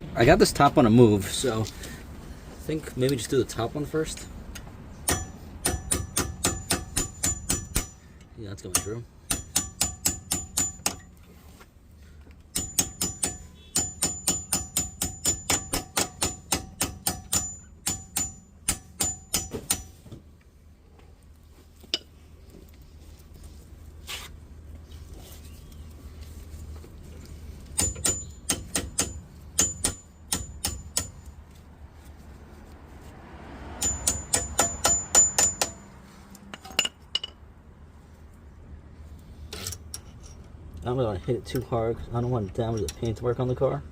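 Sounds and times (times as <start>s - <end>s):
hammer tapping steel punch: 5.0s - 11.1s, 12.5s - 20.1s, 27.7s - 31.3s, 33.8s - 35.8s.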